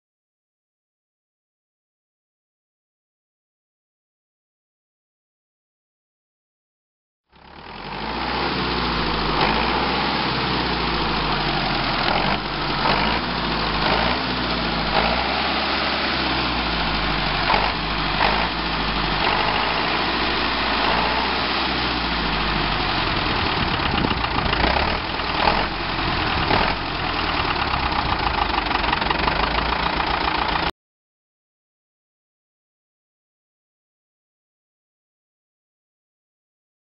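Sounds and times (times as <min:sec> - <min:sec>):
tractor diesel engine revving: 0:07.4 - 0:30.7.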